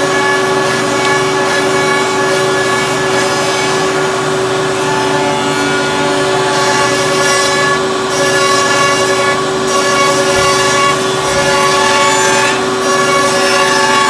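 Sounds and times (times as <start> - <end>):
router hiss cutting wood: 0.0 - 14.0
wood router whining: 0.0 - 14.0.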